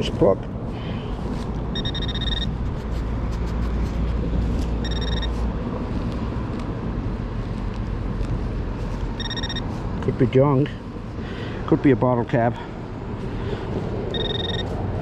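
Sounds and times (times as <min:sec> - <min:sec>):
metal detector high beeps: 0:01.7 - 0:02.5, 0:04.8 - 0:05.3, 0:09.2 - 0:09.6, 0:14.1 - 0:14.7.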